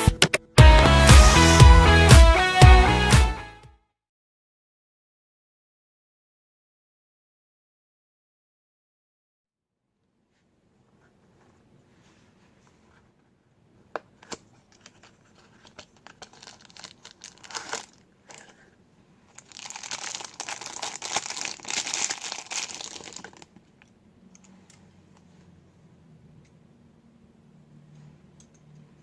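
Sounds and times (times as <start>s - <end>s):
packaging crinkling and tearing: 14.8s - 18.6s, 19.3s - 23.6s
toy packaging clicks: 15.7s - 18.5s, 19.3s - 23.6s.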